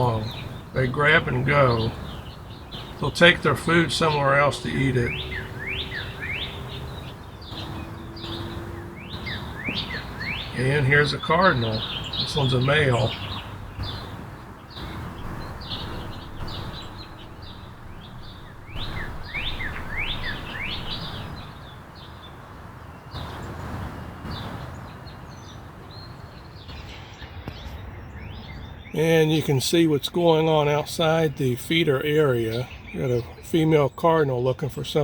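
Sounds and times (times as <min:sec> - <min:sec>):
low background rumble: 0:00.0 - 0:23.2
songbirds chirping: 0:00.0 - 0:35.0.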